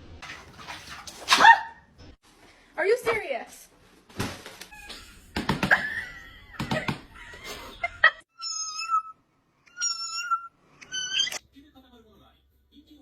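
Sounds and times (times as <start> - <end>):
cat meowing: 8.4 - 11.4.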